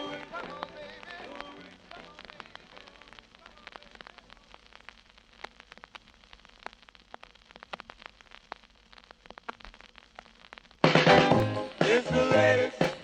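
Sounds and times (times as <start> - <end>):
faint record hiss: 0.0 - 13.0
vinyl record clicks and pops: 0.0 - 13.0.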